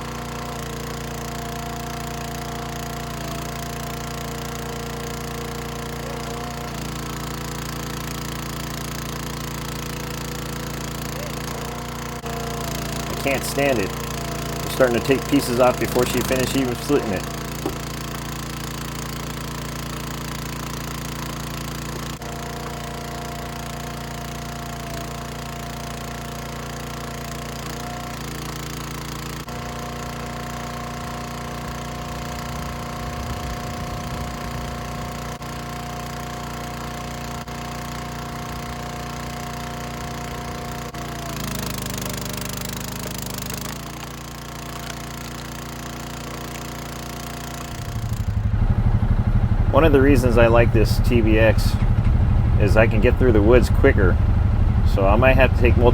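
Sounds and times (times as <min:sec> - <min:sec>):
wood splitting: 0:00.0 - 0:53.3
gas engine running: 0:00.0 - 0:55.9
steady whine: 0:47.6 - 0:55.9.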